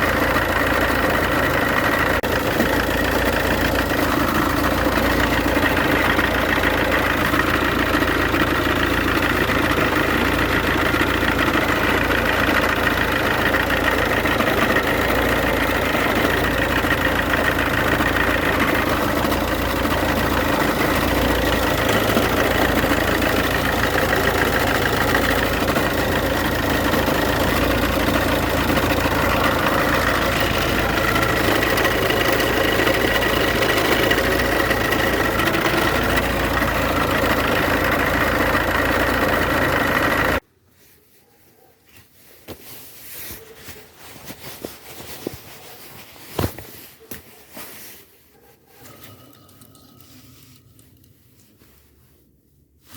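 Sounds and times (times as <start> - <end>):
diesel engine idling: 0.0 - 40.4.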